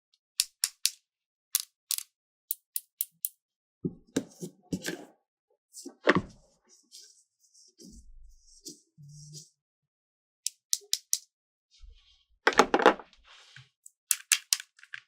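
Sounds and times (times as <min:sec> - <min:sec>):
sharp small clicks: 0:00.4 - 0:03.4
plastic pieces knocking: 0:12.5 - 0:13.2.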